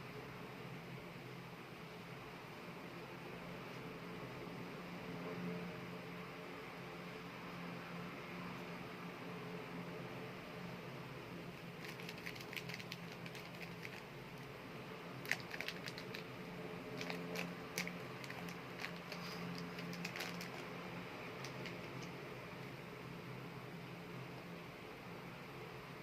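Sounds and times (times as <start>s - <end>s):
steady low hum: 0.0s - 26.0s
clay crackling clicks: 21.4s - 22.2s.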